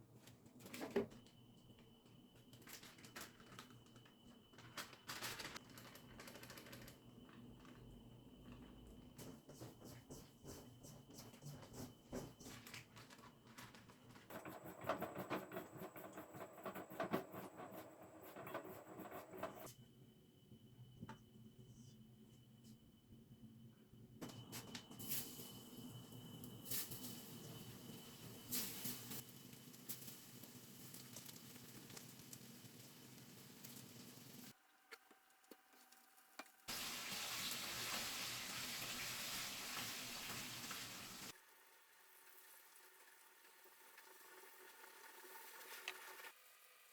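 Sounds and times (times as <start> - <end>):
faint high whine: 10.2 - 29.6
food sizzling in a pan: 26.6 - 34.5, 36.7 - 46.9.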